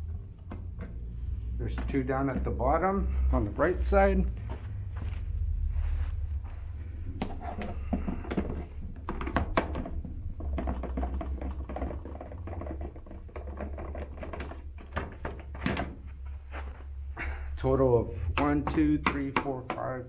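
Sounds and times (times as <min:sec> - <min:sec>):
low steady hum: 0:00.0 - 0:13.1.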